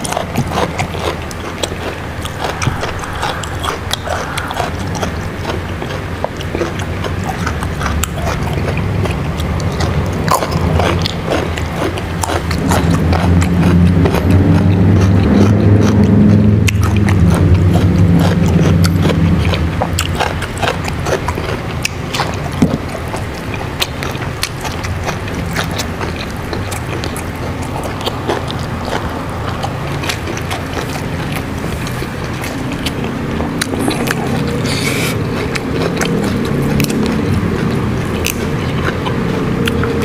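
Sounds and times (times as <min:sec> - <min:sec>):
chewing raw vegetables: 0:00.0 - 0:40.0
low steady hum: 0:00.0 - 0:40.0
mouth clicks: 0:25.5 - 0:40.0.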